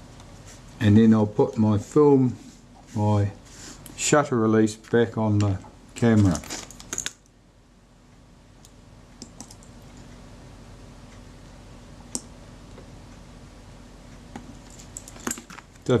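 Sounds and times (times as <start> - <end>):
faint steady hum: 0.0 - 16.0
small metal parts clicking: 6.2 - 7.3.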